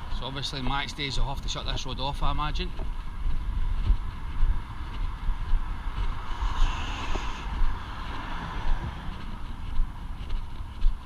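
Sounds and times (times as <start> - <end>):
wind buffeting microphone: 0.0 - 11.0
vehicle passing: 3.0 - 11.0
traffic hiss: 6.2 - 10.0.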